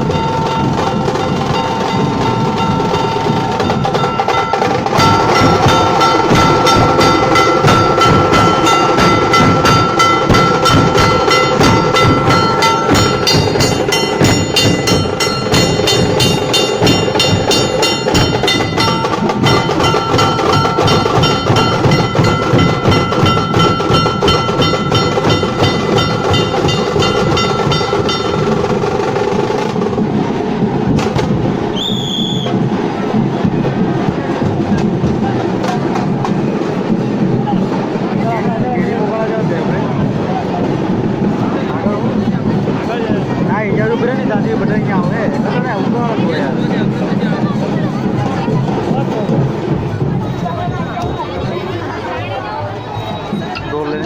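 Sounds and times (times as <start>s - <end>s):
steady ringing tone: 0.0s - 29.1s
dhol drumming: 0.0s - 54.0s.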